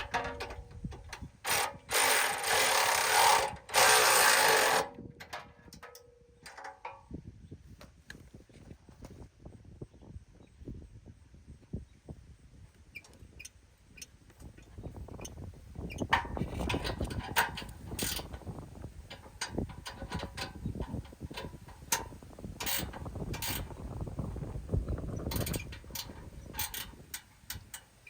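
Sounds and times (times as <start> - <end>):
ratchet wrench clicking: 1.5 - 4.8.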